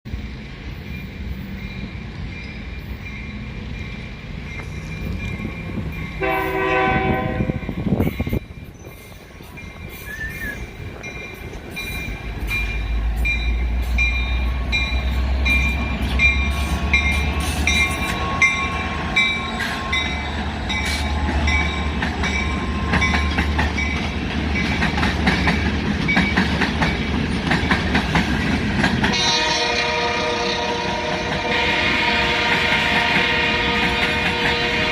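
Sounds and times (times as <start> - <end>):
diesel locomotive engine rumble: 0.1 - 34.9
locomotive horn: 6.2 - 8.0, 15.9 - 21.3, 29.1 - 34.9
wheels clicking over rail joints: 8.0 - 29.2.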